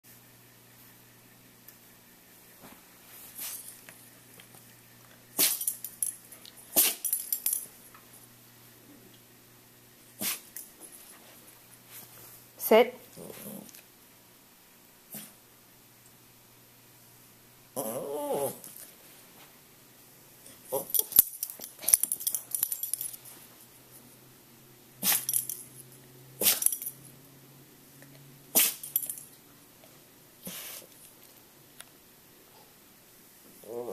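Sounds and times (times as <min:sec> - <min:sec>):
dog sneezing: 0:05.4 - 0:05.8, 0:06.7 - 0:07.2, 0:10.2 - 0:10.6, 0:15.1 - 0:15.4, 0:25.0 - 0:25.4, 0:26.4 - 0:26.8, 0:28.5 - 0:28.9, 0:30.4 - 0:31.0.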